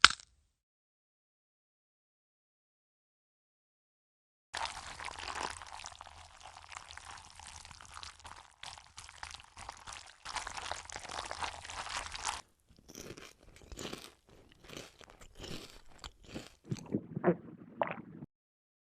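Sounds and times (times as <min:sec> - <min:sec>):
crunching bites and chewing: 0:00.0 - 0:00.3, 0:04.6 - 0:17.1.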